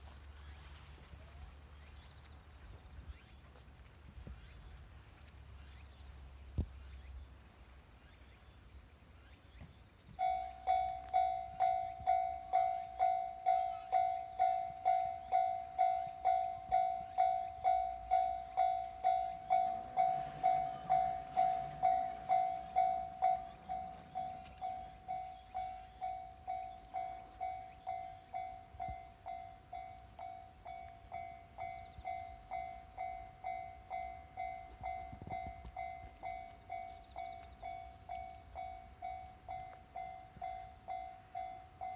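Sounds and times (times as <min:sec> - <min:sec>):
level-crossing warning bell: 0:10.2 - 0:41.9.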